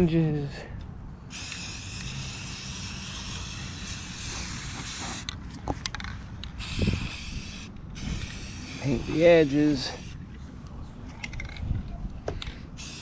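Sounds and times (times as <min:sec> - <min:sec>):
aerosol spray can hissing: 0:01.3 - 0:05.3, 0:06.6 - 0:10.2, 0:12.8 - 0:13.0.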